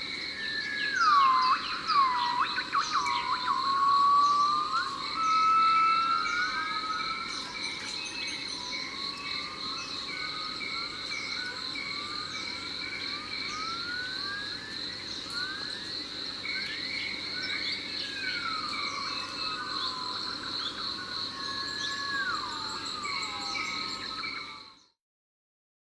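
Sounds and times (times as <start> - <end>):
insects droning: 0.0 - 24.9
low insect trill: 0.0 - 24.9
birds whistling: 0.7 - 9.0.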